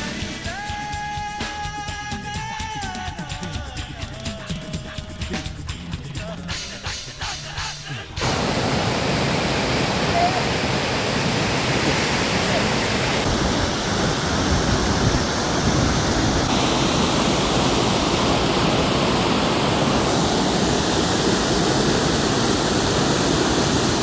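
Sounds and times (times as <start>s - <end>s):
waterfall rushing: 8.2s - 24.0s.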